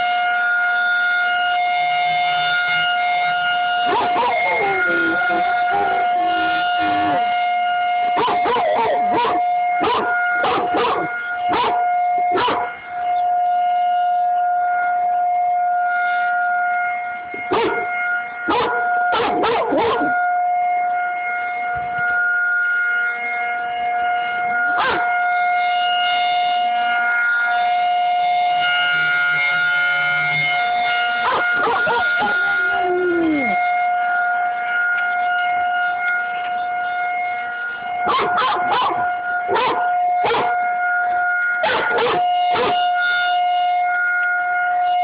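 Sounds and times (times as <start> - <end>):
warning siren steady tone: 0.0 - 45.0
dog howling: 3.9 - 7.3, 8.2 - 11.8, 18.5 - 20.1, 31.2 - 33.7.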